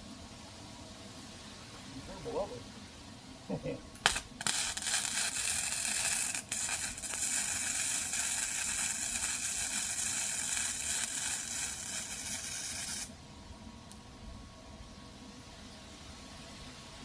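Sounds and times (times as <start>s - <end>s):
electric arc welder crackling: 3.9s - 13.2s.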